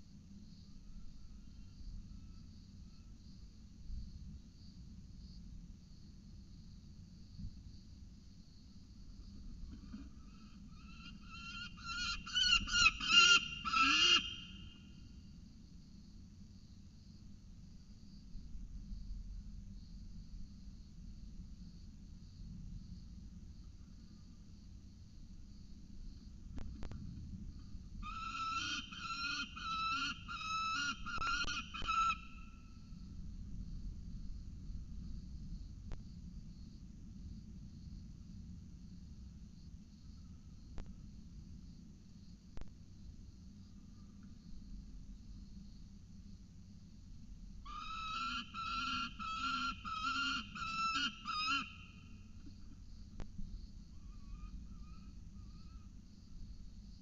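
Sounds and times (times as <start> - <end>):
falcon calling: 10.3 - 14.8, 28.0 - 32.5, 47.7 - 52.0.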